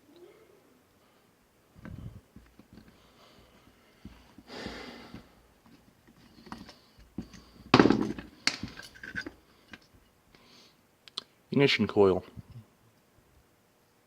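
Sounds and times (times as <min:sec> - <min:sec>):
tools and metal parts clicking: 0:08.1 - 0:09.9.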